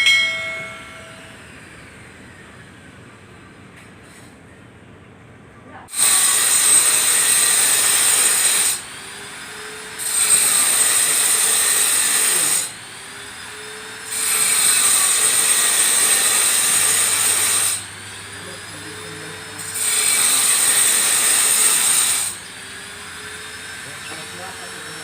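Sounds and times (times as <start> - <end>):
angle grinder cutting tile: 5.9 - 25.0.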